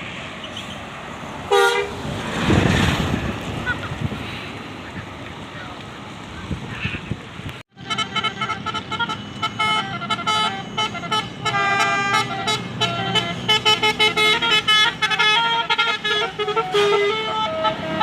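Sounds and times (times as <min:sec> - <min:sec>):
bus engine rumble: 0:00.0 - 0:18.0
musical bus horn tune: 0:01.5 - 0:02.0, 0:07.7 - 0:18.0.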